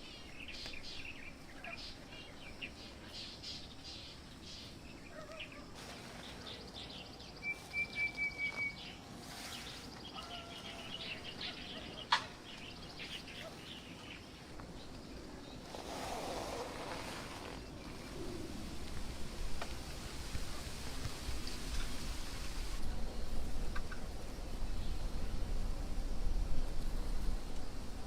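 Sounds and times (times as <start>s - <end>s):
birds chirping and calling: 0.0s - 15.0s
steady outdoor hiss: 0.0s - 28.0s.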